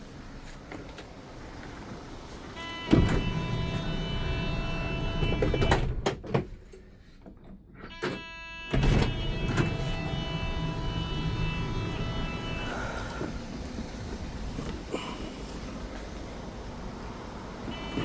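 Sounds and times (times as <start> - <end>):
steady warning tone: 8.2 - 13.4.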